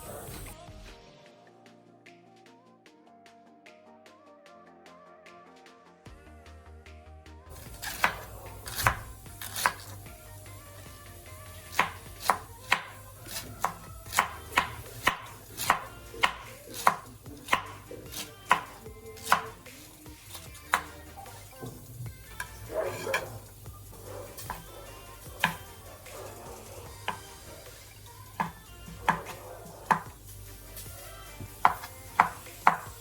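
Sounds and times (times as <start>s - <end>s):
knife chopping on cutting board: 7.5s - 10.1s, 11.6s - 33.0s.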